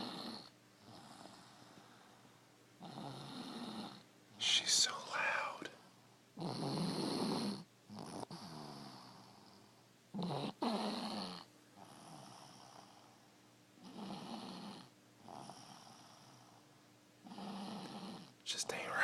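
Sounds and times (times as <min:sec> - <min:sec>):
loud snoring: 0:00.0 - 0:01.8, 0:02.8 - 0:04.0, 0:06.4 - 0:13.1, 0:13.8 - 0:16.5, 0:17.2 - 0:18.4.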